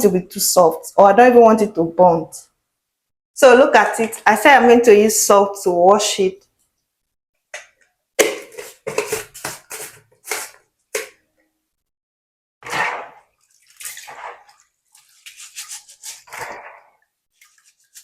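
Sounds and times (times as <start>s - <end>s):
rice being washed in water: 12.6s - 18.0s.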